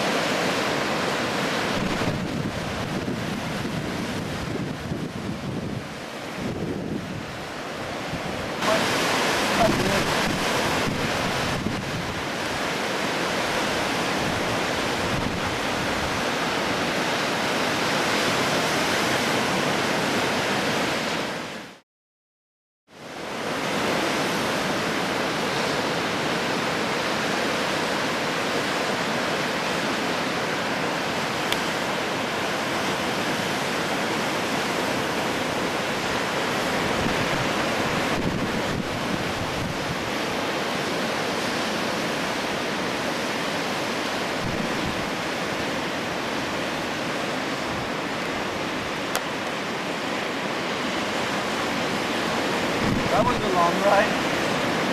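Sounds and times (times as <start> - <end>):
ocean surf rushing: 0.0 - 21.8, 22.9 - 54.9
wind on the microphone: 1.6 - 16.9, 34.5 - 40.4, 44.1 - 49.1, 50.6 - 54.9.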